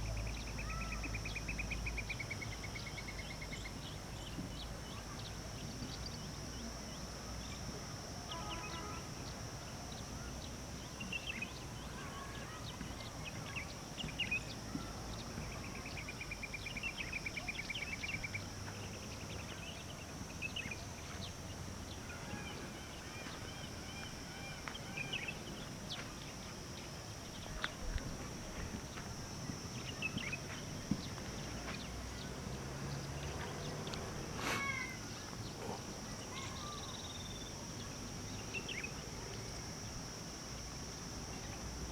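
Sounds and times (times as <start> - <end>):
steady high-pitched whine: 0.0 - 41.9.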